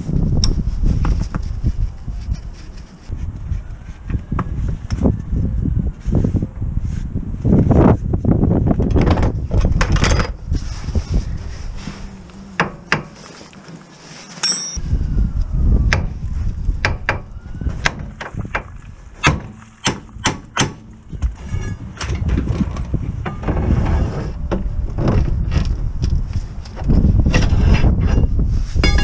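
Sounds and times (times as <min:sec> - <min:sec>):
low rumbling noise: 0:00.0 - 0:14.2, 0:14.8 - 0:29.0
sharp knocks and clinks: 0:14.4 - 0:14.8.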